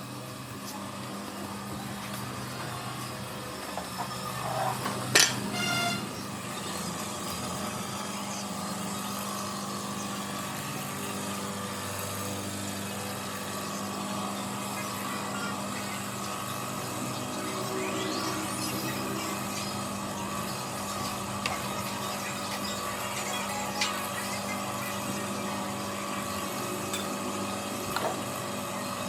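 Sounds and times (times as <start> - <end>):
mechanical hum: 0.0 - 29.0
short ringing tone: 5.5 - 6.2.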